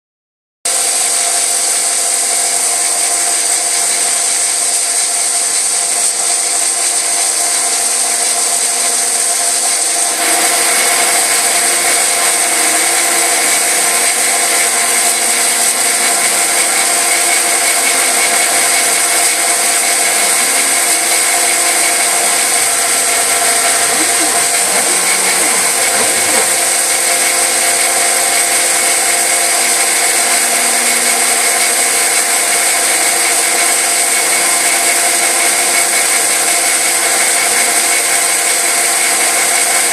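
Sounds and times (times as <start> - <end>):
cnc machine running: 0.7 - 39.9
constant machine whine: 0.7 - 39.9
higher tone: 10.1 - 28.7.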